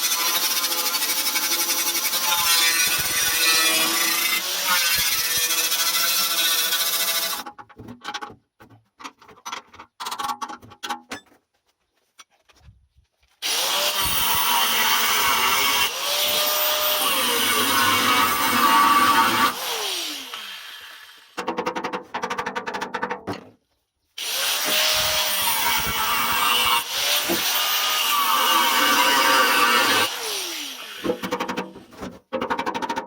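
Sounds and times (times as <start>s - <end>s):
power tool motor whine: 24.2s - 31.3s.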